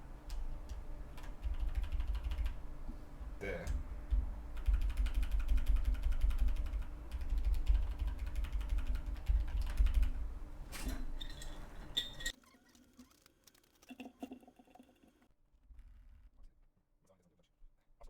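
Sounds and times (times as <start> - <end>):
mechanical keyboard clicking: 0.3 - 2.6, 4.6 - 10.2.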